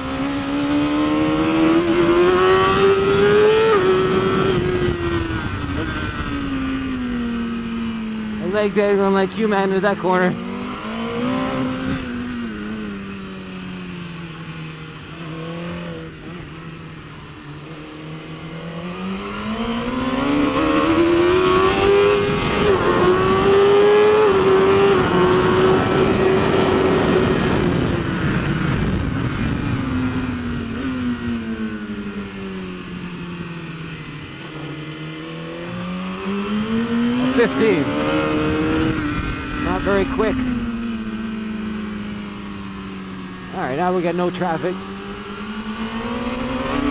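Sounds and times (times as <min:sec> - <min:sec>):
racing motorcycle engine: 0:00.0 - 0:46.9
wind rush: 0:01.4 - 0:08.0, 0:19.7 - 0:31.8, 0:36.3 - 0:41.2.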